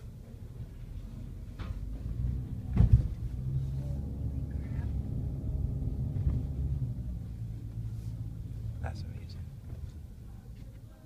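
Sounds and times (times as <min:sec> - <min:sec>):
car engine pulling under load: 0:01.1 - 0:10.2
loud thump: 0:02.7 - 0:03.2.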